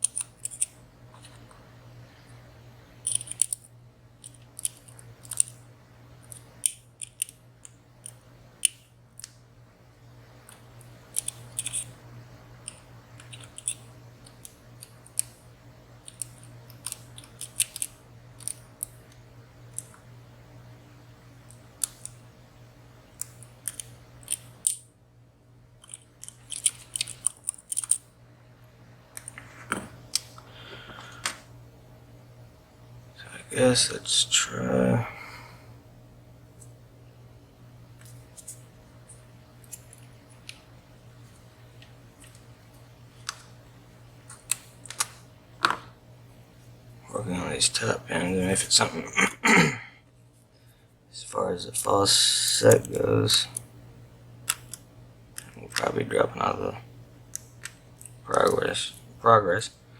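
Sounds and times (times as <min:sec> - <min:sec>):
faint steady hum: 0:00.0 - 0:59.9
lock pick clicking in padlock: 0:03.0 - 0:03.6, 0:25.8 - 0:28.0.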